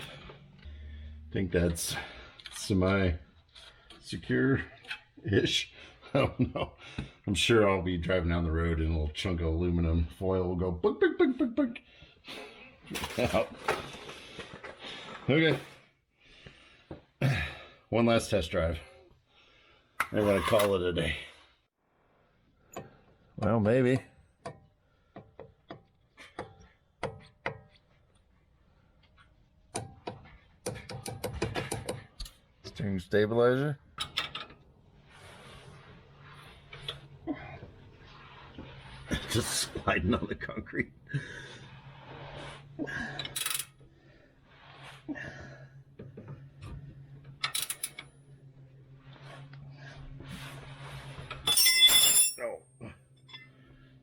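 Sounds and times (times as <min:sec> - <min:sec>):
metallic clinks and scraping: 0:20.1 - 0:20.8, 0:43.1 - 0:43.8, 0:47.4 - 0:48.3, 0:50.7 - 0:53.6
metallic clinks and knocks: 0:51.3 - 0:52.4.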